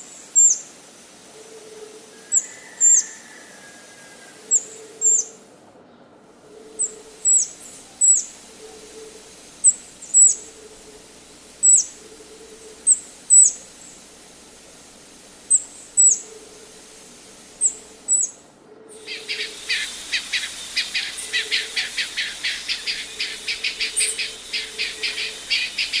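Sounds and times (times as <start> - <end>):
bird high downslurred calls: 6.5 - 26.0
rapid bird chips: 6.7 - 26.0.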